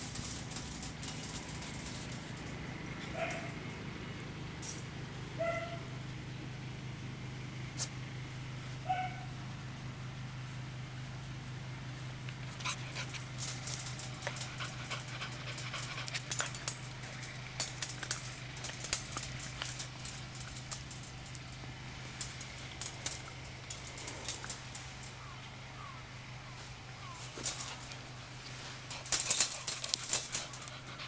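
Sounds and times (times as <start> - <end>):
puppy claws clicking and scratching: 0.0 - 3.7, 12.2 - 25.2, 27.2 - 31.0
steady low hum: 0.0 - 31.0.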